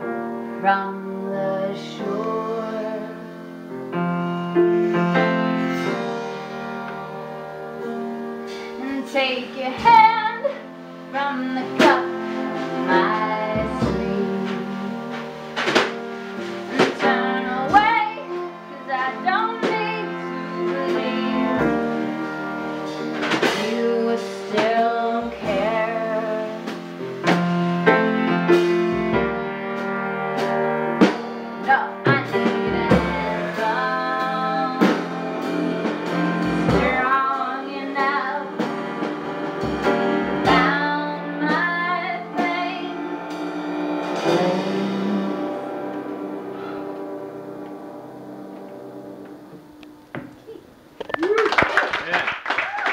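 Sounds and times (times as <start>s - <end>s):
live band music: 0.0s - 51.6s
drum hits: 11.6s - 18.5s, 30.4s - 46.7s.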